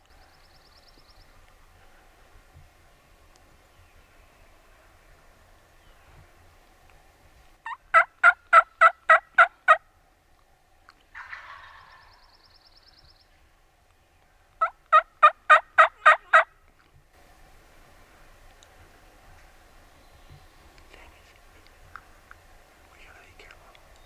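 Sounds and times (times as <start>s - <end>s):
rustle: 0.0s - 24.0s
turkey yelping: 7.7s - 9.8s, 11.1s - 12.2s, 14.6s - 16.5s.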